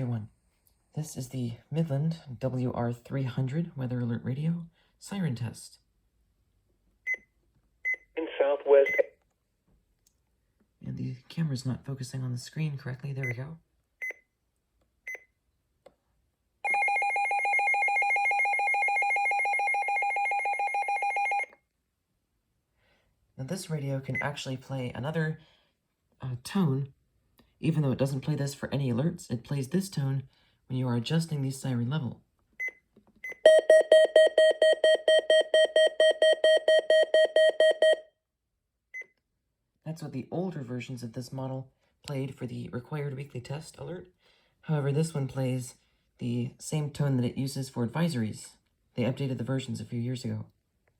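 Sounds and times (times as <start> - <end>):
high key beep: 8.8 - 9.1, 32.6 - 38.0
rapidly pulsed electronic alarm: 16.7 - 21.5, 33.3 - 38.0.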